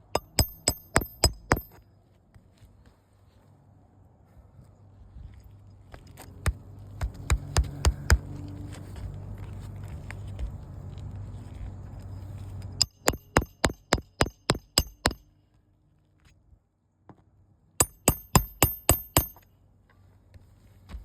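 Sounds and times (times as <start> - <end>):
sharp metallic taps ringing: 0.0 - 1.8, 12.8 - 15.4, 17.8 - 19.5.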